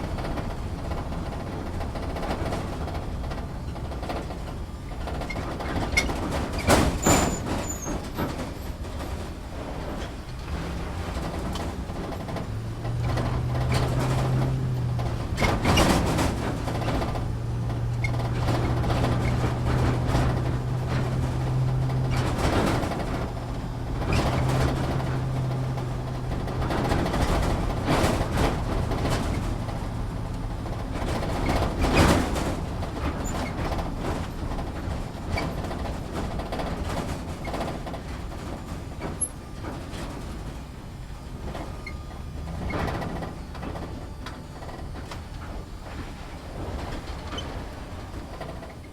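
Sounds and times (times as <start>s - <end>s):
knocks and rattles over rocks: 0.0s - 40.6s
low engine drone: 8.5s - 36.8s.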